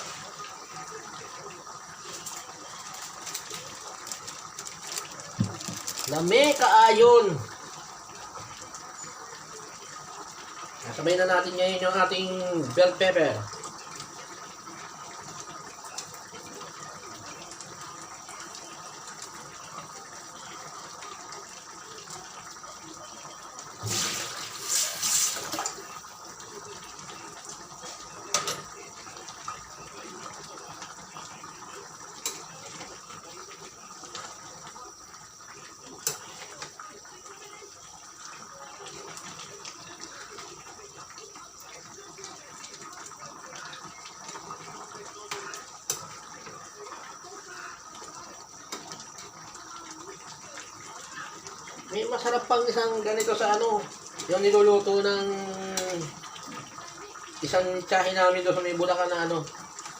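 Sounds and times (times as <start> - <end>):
sauce simmering in a pan: 0.0 - 59.9.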